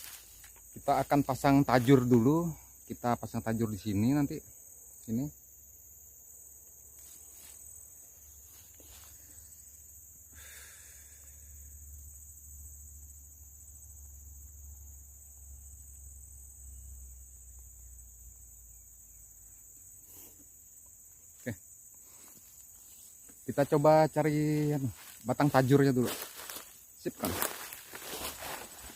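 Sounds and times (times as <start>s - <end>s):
insects shrilling in chorus: 0.0s - 28.9s.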